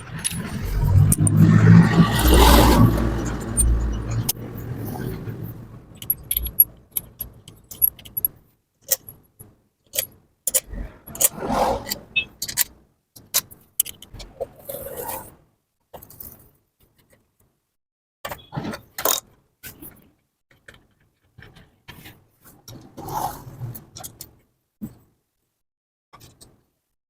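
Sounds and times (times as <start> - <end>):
metal scraping on metal: 0.0 - 8.3
metal clinks and jangling: 6.0 - 8.4.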